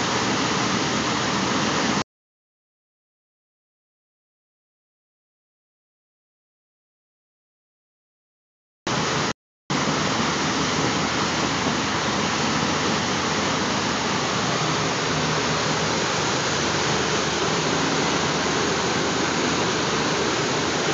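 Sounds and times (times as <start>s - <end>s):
water rushing in boat wake: 0.0s - 2.0s, 8.9s - 20.9s.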